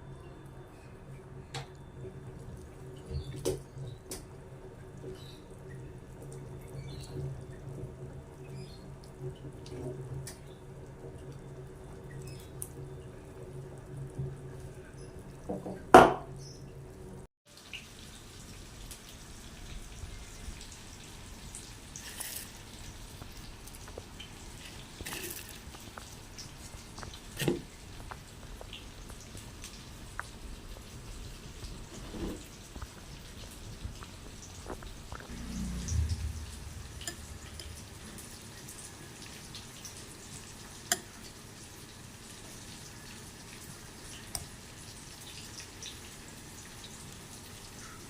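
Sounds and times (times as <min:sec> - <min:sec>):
steady low hum: 0:34.9 - 0:38.4.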